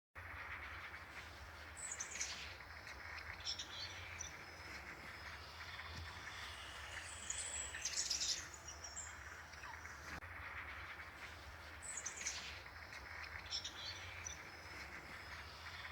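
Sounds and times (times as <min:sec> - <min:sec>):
birds chirping and trilling: 0:00.2 - 0:15.9
low hum: 0:04.0 - 0:10.2.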